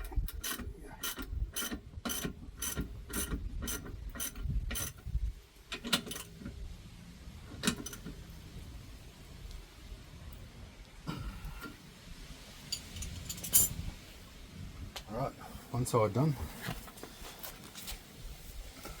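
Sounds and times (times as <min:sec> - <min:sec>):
ratchet wrench clicking: 0:00.2 - 0:05.0.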